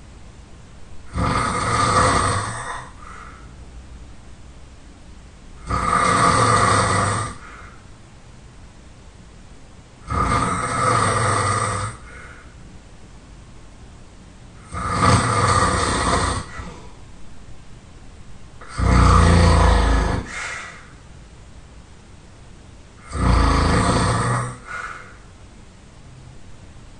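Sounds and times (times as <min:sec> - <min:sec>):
person snoring loudly: 0:01.0 - 0:03.4, 0:05.6 - 0:07.8, 0:10.0 - 0:12.4, 0:14.6 - 0:16.9, 0:18.6 - 0:20.9, 0:23.0 - 0:25.2
faint breath: 0:02.6 - 0:03.6, 0:07.3 - 0:07.9, 0:12.0 - 0:12.7, 0:20.2 - 0:21.0, 0:24.6 - 0:25.4.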